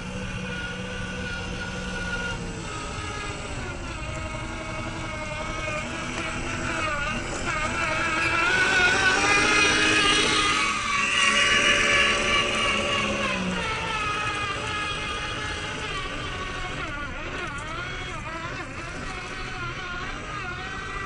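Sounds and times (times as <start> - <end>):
toy truck electric motor whine: 0.0 - 21.0.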